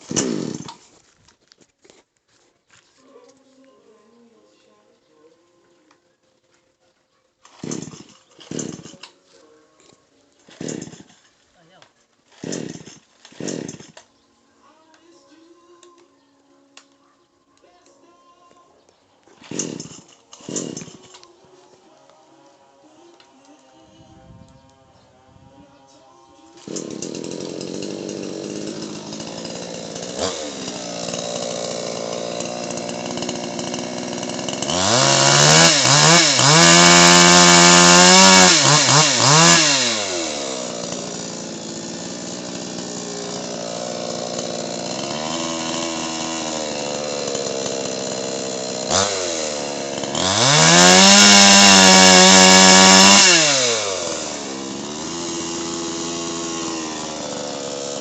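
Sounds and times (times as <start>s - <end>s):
chainsaw idling and revving: 0.0s - 0.9s, 7.5s - 9.2s, 10.4s - 11.3s, 12.3s - 14.1s, 19.4s - 21.3s, 26.5s - 58.0s.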